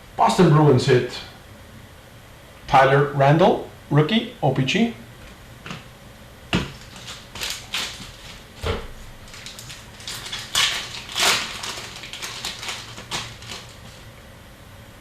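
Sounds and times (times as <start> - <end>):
foil wrapper crinkling: 6.6 - 14.1.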